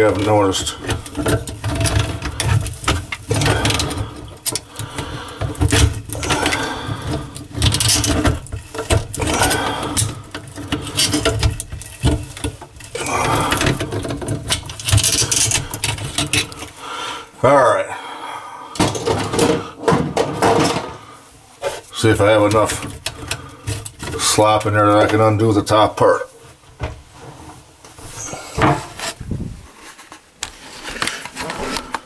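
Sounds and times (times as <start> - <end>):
hand tool clattering on metal nut: 0.2 - 16.7.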